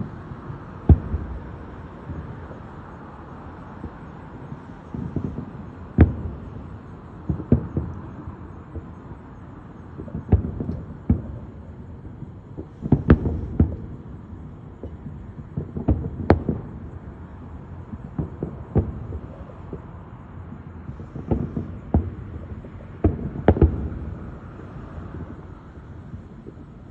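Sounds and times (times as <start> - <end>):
firework shells booming: 0.0 - 2.4, 10.0 - 11.5, 12.5 - 14.1, 14.8 - 17.0, 17.9 - 19.8, 20.9 - 25.4
steady background hum: 0.0 - 26.9.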